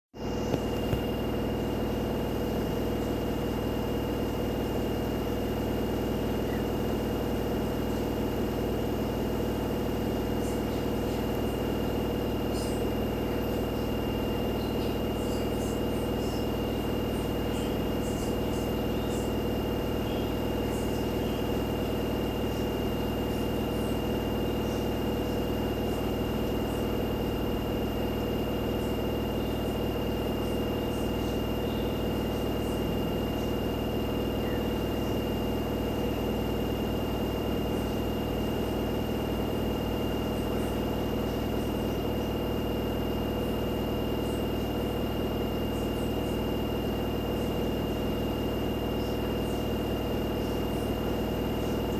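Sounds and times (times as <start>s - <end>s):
washing machine spinning: 0.1s - 51.9s
motor whine: 0.2s - 51.9s.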